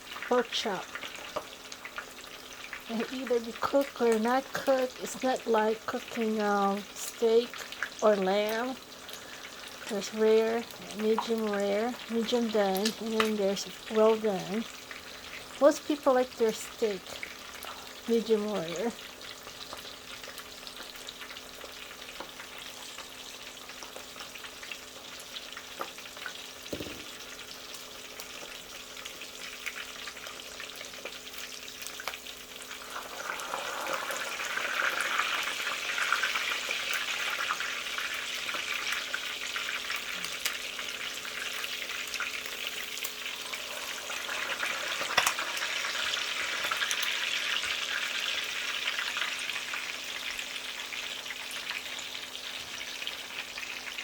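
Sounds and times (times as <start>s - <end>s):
oil sizzling and crackling: 0.0s - 54.0s
knock: 26.7s - 27.1s.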